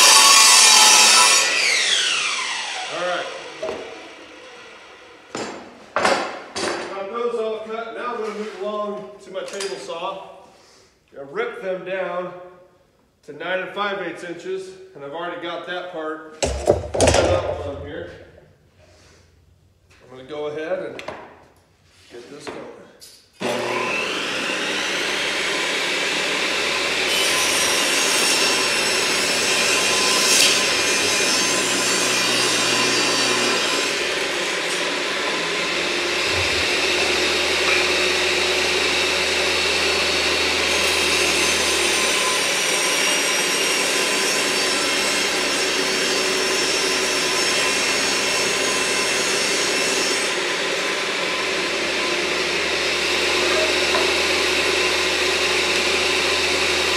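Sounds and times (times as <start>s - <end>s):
table saw running: 0.0s - 5.6s, 23.4s - 56.9s
saw blade cutting wood: 0.0s - 6.4s, 23.4s - 56.9s.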